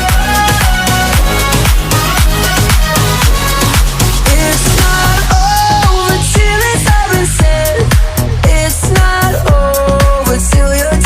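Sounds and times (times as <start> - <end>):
synth melody: 0.0 - 6.7
kick drum beat: 0.0 - 11.0.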